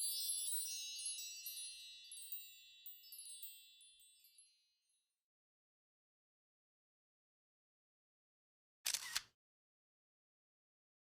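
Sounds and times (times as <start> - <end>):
high bright chimes ringing: 0.0 - 4.6.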